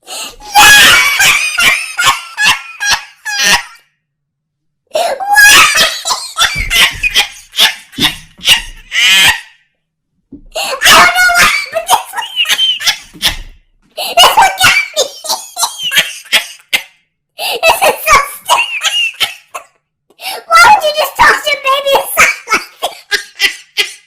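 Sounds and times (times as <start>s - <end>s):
loud laughter: 0.5s - 3.8s, 5.2s - 9.6s, 10.8s - 17.0s, 17.6s - 19.7s, 22.0s - 24.0s.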